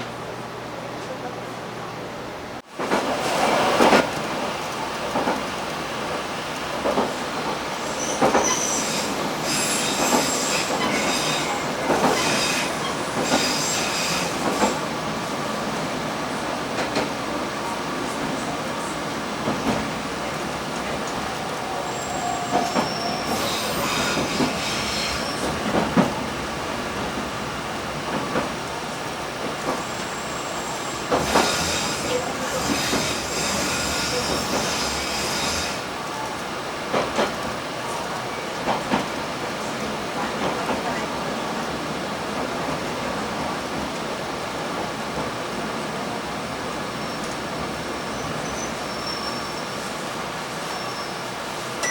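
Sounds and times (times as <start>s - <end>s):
railcar rumbling on track: 0.0s - 51.9s
high wheel squeal: 7.9s - 14.8s, 21.7s - 25.6s, 29.8s - 35.8s, 48.1s - 50.0s, 50.7s - 51.9s.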